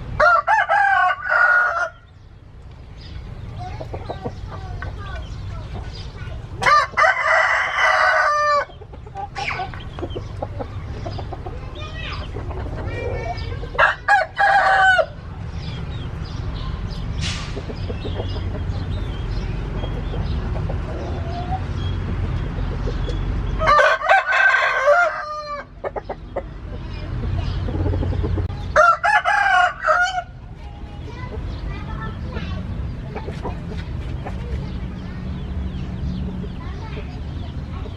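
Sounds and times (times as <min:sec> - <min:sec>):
rooster crowing: 0:00.2 - 0:02.1, 0:06.6 - 0:08.7, 0:13.8 - 0:15.2, 0:23.6 - 0:25.7, 0:28.8 - 0:30.3
soft clucking: 0:08.6 - 0:13.8.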